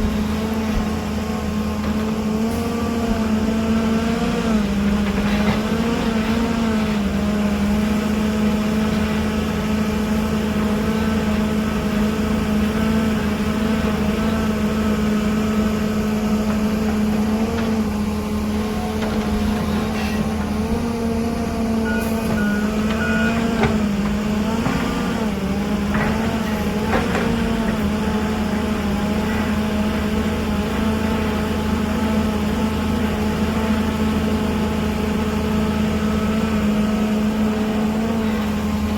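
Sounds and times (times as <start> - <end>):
heavy machinery diesel engine: 0.0 - 38.9.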